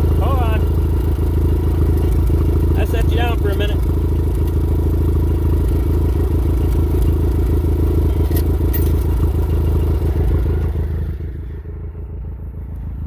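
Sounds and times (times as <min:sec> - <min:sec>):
tractor engine running: 0:00.0 - 0:13.0.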